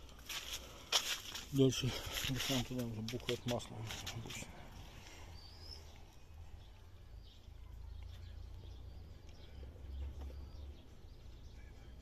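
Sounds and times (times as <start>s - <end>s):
faint bird chirps: 4.4s - 12.0s.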